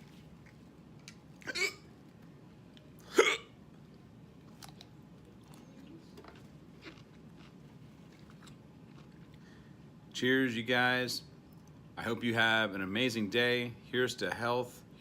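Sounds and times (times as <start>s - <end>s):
sharp throat sound: 1.4s - 1.9s, 3.0s - 3.5s.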